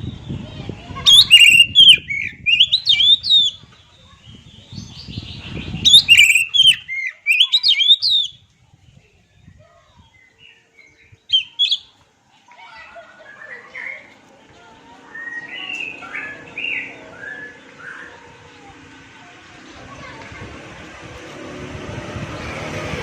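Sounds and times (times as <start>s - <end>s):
bird singing whistled notes: 1.0s - 3.6s, 4.3s - 8.4s, 10.0s - 12.0s, 15.1s - 18.2s.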